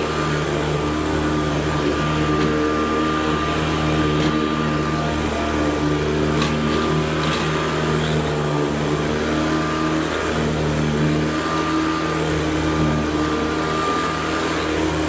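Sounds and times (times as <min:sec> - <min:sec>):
vacuum cleaner on carpet: 0:00.0 - 0:15.0.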